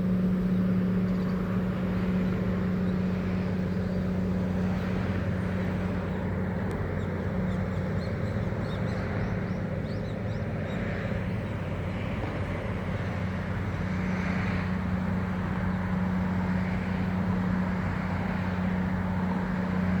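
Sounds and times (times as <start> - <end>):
engine drone: 0.0 - 20.0
birds chirping: 0.2 - 11.7.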